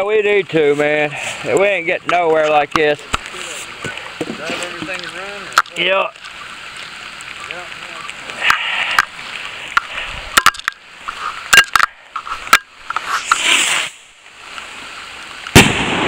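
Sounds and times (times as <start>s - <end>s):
faint rain hiss: 0.0s - 16.0s
rustle: 0.0s - 16.0s
handling clicks and taps: 9.7s - 13.1s.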